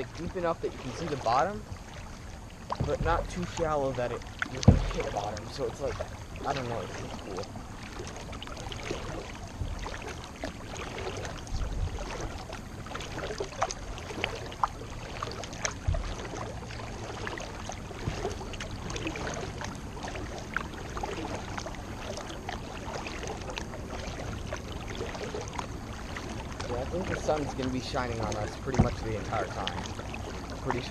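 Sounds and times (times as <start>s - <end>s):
paddle splashing in water: 0.0s - 30.9s
dull low thumps: 2.6s - 6.5s, 9.5s - 9.9s, 15.7s - 16.4s.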